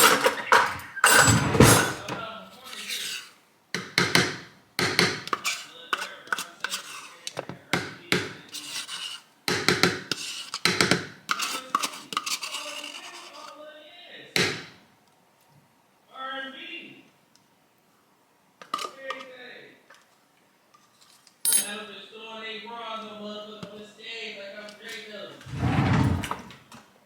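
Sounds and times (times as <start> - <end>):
knocks and rubbing: 0.0 - 2.3, 25.4 - 26.6
spoon scraping kitchenware: 0.0 - 3.4, 5.2 - 7.2.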